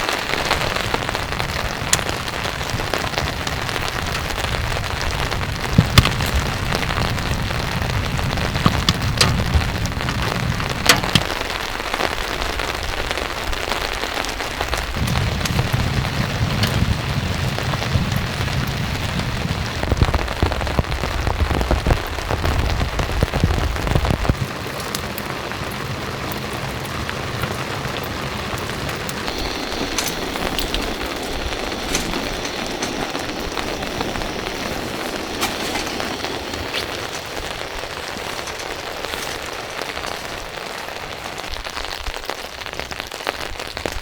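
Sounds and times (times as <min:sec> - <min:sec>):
heavy rain hissing: 0:00.0 - 0:44.0
deep low drumming: 0:00.8 - 0:11.6
water drips ticking: 0:21.6 - 0:42.4.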